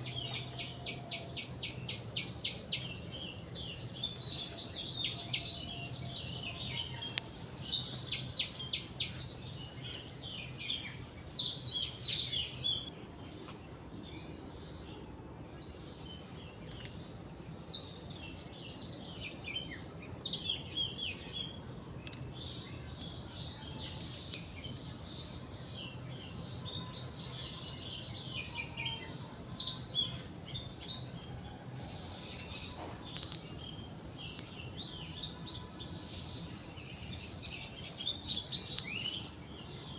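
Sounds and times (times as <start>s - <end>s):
faint low hum: 0.0s - 25.5s
small birds chirping: 0.0s - 39.9s.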